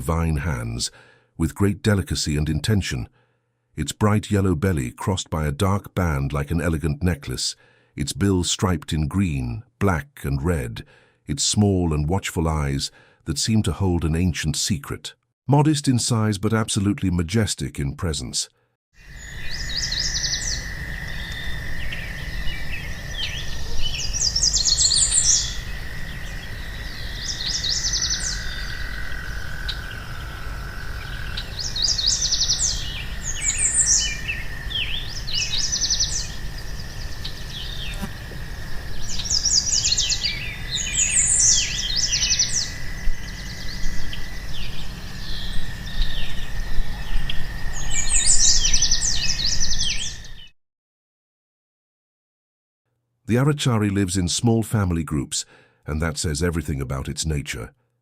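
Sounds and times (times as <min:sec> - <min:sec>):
birds trilling and chirping: 0:19.0 - 0:50.5.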